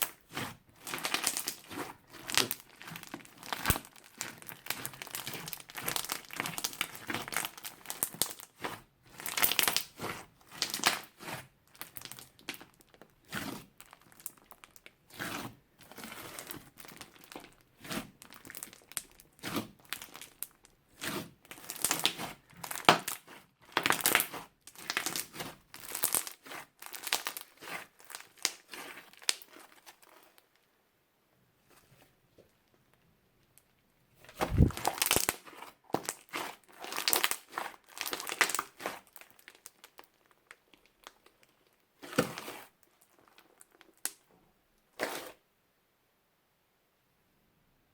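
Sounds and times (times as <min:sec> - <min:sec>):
crunchy slime squeezed by hand: 0:34.3 - 0:44.3, 0:45.0 - 0:45.4.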